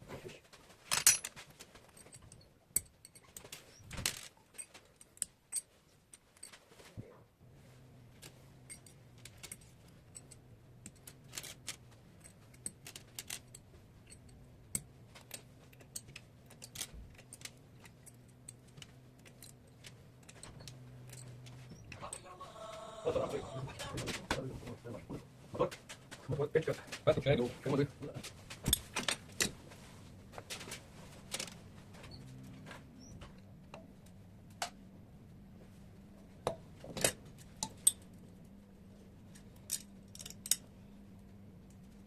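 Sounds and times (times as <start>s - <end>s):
steady low hum: 0.0s - 42.0s
metal parts clicking and clinking: 0.9s - 6.6s, 8.2s - 22.3s, 28.3s - 29.6s, 36.9s - 38.2s, 39.3s - 40.7s.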